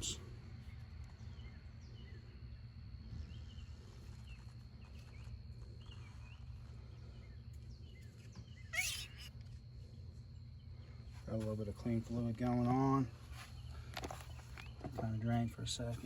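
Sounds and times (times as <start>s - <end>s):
faint bird chirps: 0.0s - 12.0s.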